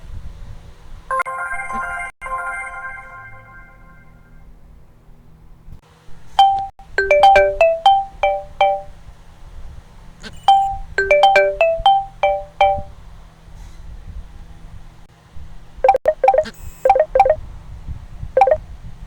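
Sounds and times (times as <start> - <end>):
phone ringtone melody: 6.4 - 8.9, 10.5 - 12.9, 15.9 - 17.4, 18.4 - 18.6.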